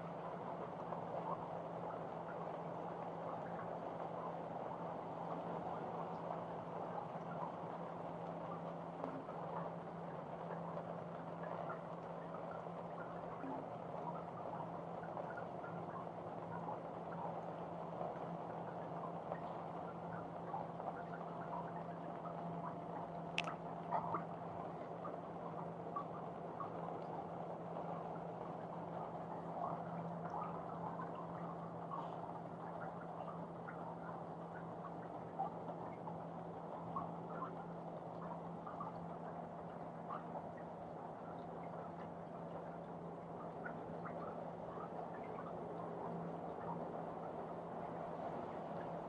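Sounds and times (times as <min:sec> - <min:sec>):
low steady hum: 0:00.0 - 0:49.0
water drips and splashes: 0:00.0 - 0:49.0
small drop ticks: 0:19.0 - 0:24.2.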